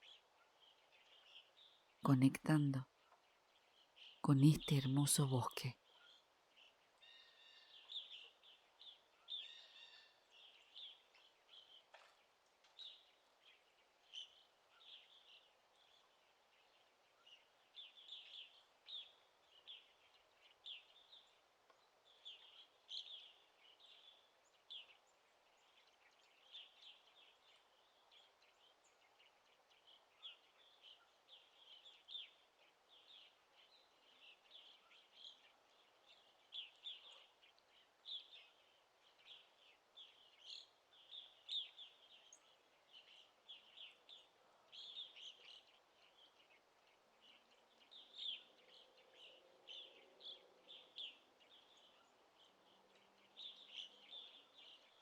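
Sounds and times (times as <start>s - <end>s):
birds chirping: 4.0s - 6.7s, 17.3s - 55.0s.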